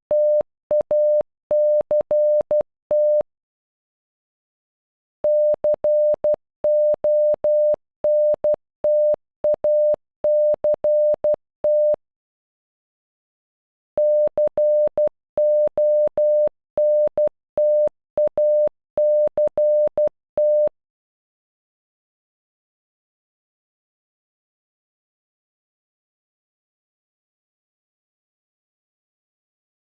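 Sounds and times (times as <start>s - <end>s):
morse code beeps: 5.3s - 12.0s, 14.0s - 20.7s.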